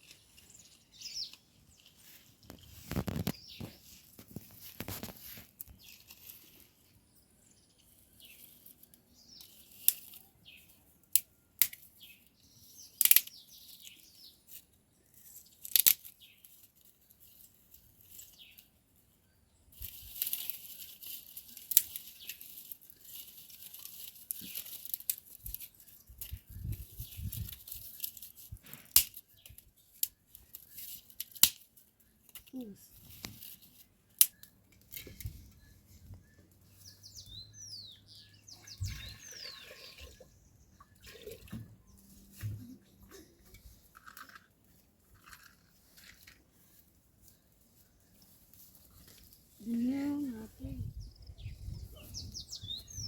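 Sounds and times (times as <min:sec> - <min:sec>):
plant stems rustling: 0:00.0 - 0:07.0, 0:19.7 - 0:37.2, 0:41.0 - 0:50.9
plant stems snapping: 0:15.6 - 0:16.1, 0:27.3 - 0:31.7.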